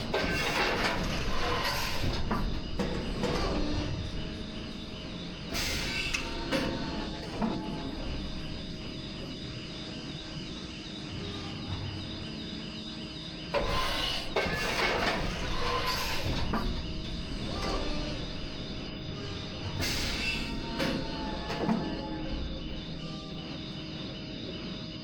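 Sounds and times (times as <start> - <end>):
moulding machine humming: 0.0 - 25.0.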